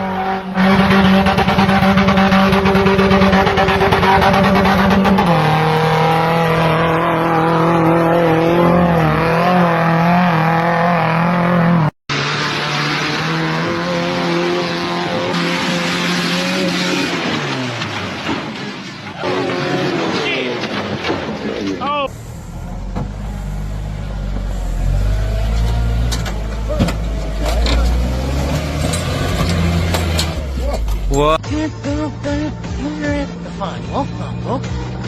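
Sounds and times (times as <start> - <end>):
second engine revving: 0.0 - 18.0
off-road engine at high revs: 0.0 - 20.8, 21.8 - 35.0.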